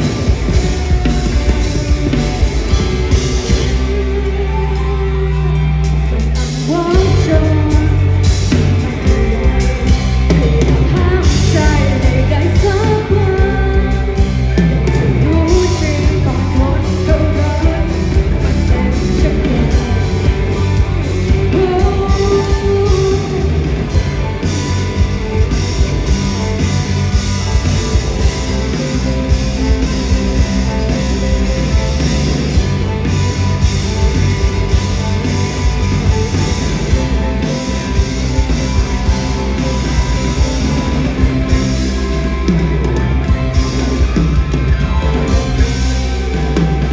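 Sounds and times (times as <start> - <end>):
person singing: 0.0 - 25.0
bass guitar: 0.0 - 46.9
drums: 0.0 - 46.9
electric guitar: 0.0 - 46.9
rock band playing: 0.0 - 46.9.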